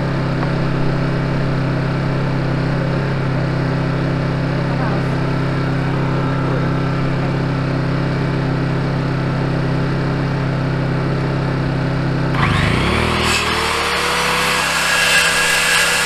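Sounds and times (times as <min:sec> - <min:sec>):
small engine humming: 0:12.3 - 0:16.0
power saw cutting wood: 0:12.4 - 0:16.0.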